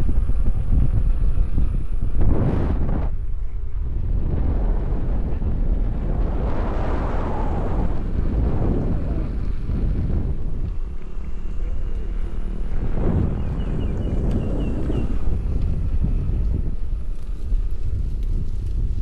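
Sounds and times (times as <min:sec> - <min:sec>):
wind buffeting microphone: 0:00.0 - 0:19.0.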